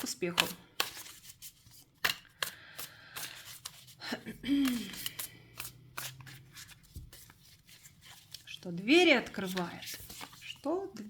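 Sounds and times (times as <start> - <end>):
cards clicking and tapping: 0.0 - 7.4.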